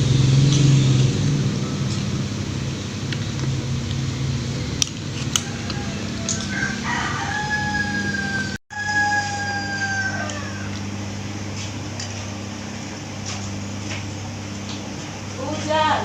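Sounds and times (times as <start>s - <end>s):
low hum: 0.0s - 15.4s
rooster crowing: 5.2s - 11.1s.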